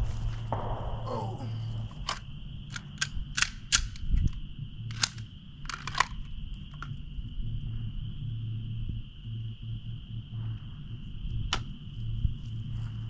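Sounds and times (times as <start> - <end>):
steady high-pitched hum: 0.0 - 13.0
gunshots: 0.5 - 2.2.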